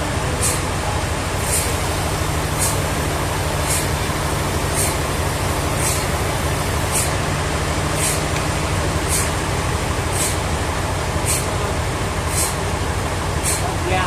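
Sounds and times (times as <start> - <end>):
sawmill machinery humming: 0.0 - 14.0
short hiss: 0.4 - 0.7, 1.4 - 2.9, 3.6 - 4.0, 4.7 - 7.2, 8.0 - 8.2, 9.1 - 9.4, 10.1 - 10.4, 11.2 - 11.5, 12.3 - 12.6, 13.4 - 13.7.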